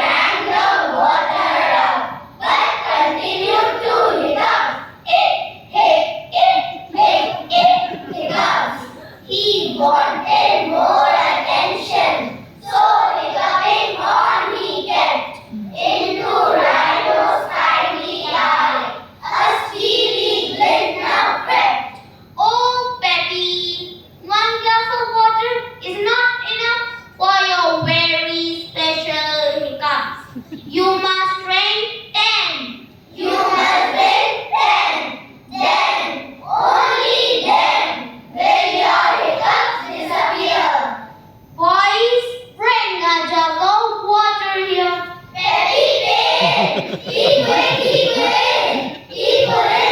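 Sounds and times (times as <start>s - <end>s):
children reciting in unison: 0.0s - 22.1s, 33.1s - 41.1s, 44.4s - 49.9s
children singing: 6.9s - 9.0s, 45.4s - 49.9s.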